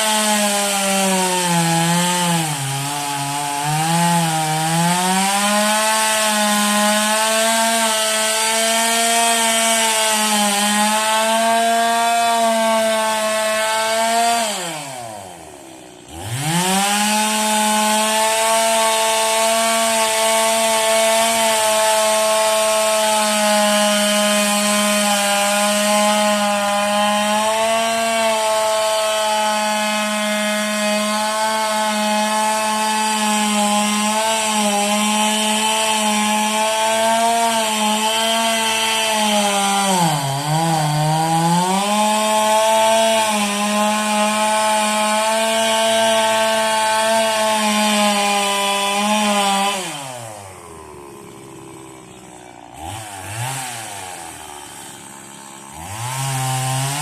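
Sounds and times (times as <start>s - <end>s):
chainsaw sawing wood: 0.0s - 57.0s.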